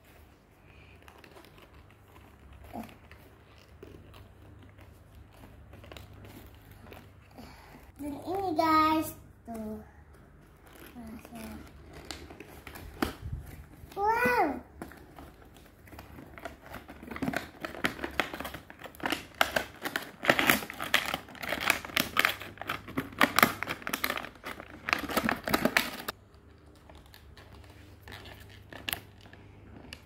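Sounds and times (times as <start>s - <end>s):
plastic packaging crinkling: 10.5s - 14.0s, 14.8s - 30.0s.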